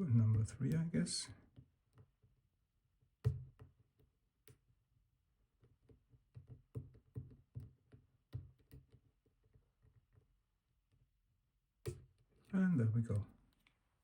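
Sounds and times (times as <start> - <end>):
lock pick clicking and tapping: 5.6 - 10.4.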